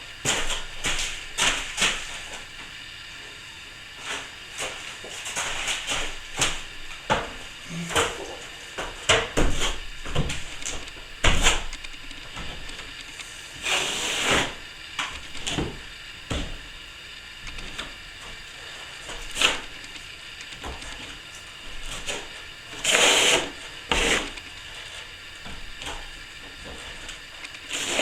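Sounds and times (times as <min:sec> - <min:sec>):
plastering tool scraping: 0:13.2 - 0:14.6, 0:21.9 - 0:28.0.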